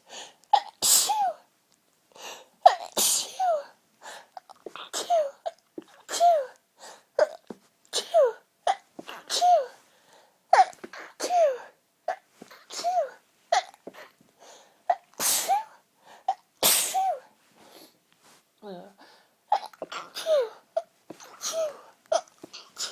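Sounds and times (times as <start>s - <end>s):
woman sneezing: 2.8s - 3.7s, 16.6s - 17.3s, 22.6s - 22.9s.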